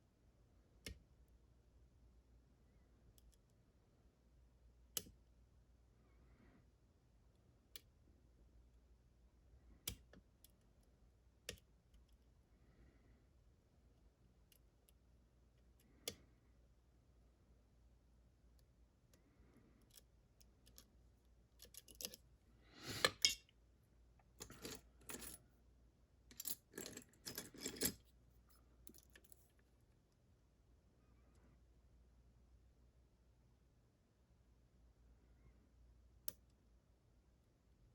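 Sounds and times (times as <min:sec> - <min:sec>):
metal lock parts clicking: 0:21.6 - 0:22.2, 0:26.3 - 0:28.0
metallic rattles and clinks: 0:26.3 - 0:28.0.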